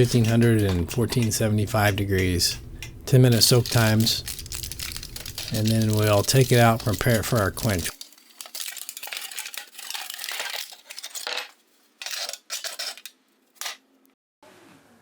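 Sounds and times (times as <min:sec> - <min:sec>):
small metal objects clinking: 0:03.3 - 0:13.8.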